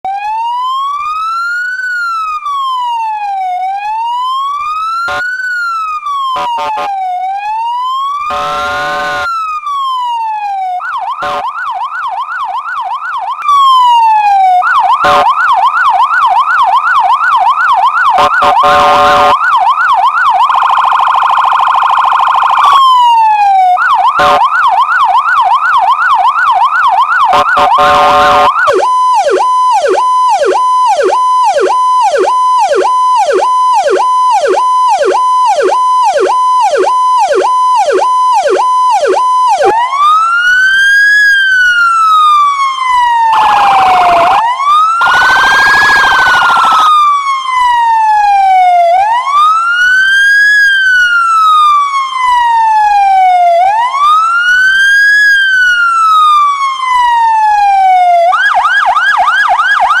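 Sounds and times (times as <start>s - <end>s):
emergency vehicle sirens: 0.0s - 60.0s
buzzing horn blast: 6.4s - 6.9s, 8.3s - 9.3s, 11.2s - 11.4s, 18.2s - 19.4s, 24.2s - 24.4s, 27.3s - 28.6s.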